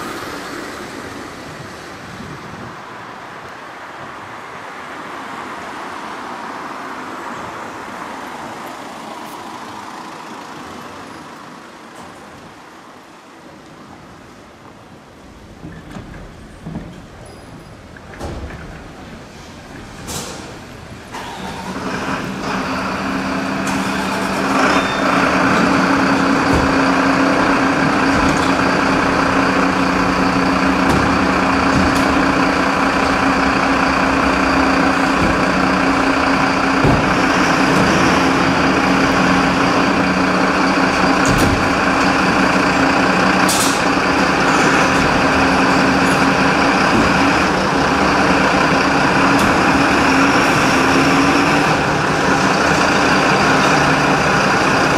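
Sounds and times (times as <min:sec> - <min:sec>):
diesel engines running: 0:00.0 - 0:04.8, 0:17.8 - 0:54.9.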